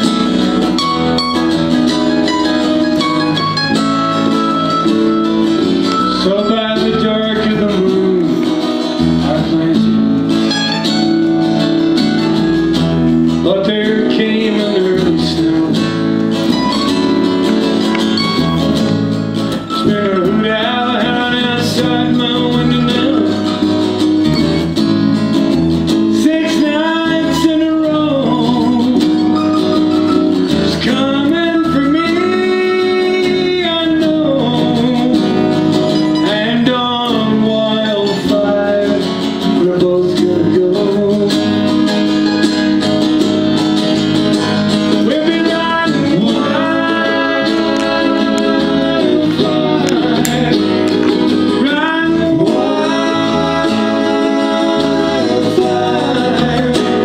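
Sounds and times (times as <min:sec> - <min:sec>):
bending melody line: 0:00.0 - 0:38.7
guitars strummed and picked: 0:00.0 - 0:57.0.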